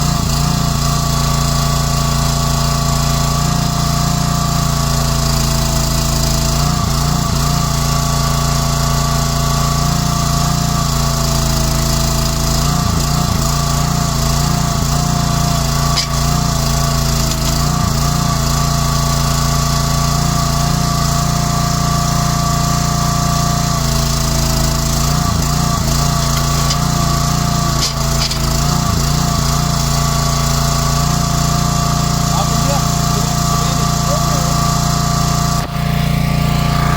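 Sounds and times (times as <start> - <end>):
excavator engine running: 0.0 - 36.9
high whine: 32.5 - 36.9.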